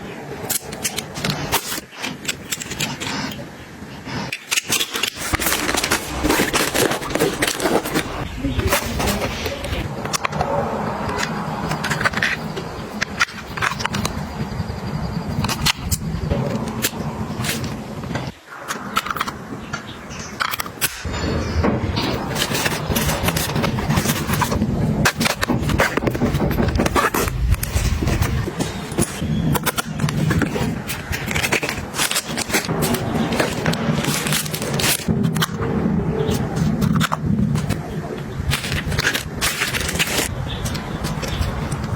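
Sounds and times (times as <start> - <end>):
packaging crinkling and clicking: 0.4 - 3.5, 4.3 - 9.4, 10.0 - 14.3, 22.1 - 35.6, 36.3 - 41.9.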